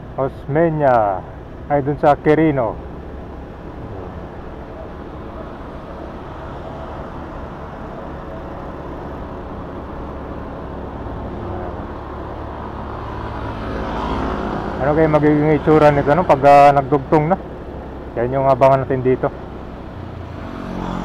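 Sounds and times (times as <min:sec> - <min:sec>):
road traffic noise: 0:00.0 - 0:21.0.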